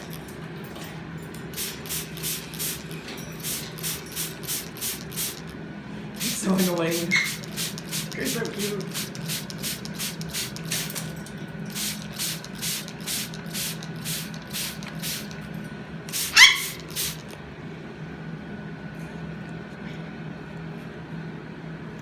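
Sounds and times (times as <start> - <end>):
spray bottle squirts: 1.5 - 5.5, 6.2 - 11.0, 11.7 - 15.4, 16.1 - 17.4
cockatoo squawk: 16.2 - 16.8.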